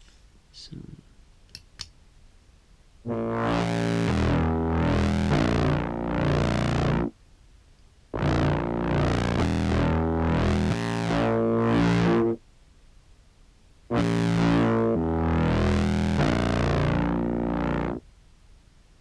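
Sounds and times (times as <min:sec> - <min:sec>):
fuzzy filtered low clarinet notes: 0:03.0 - 0:07.2, 0:08.1 - 0:12.4, 0:13.9 - 0:18.0.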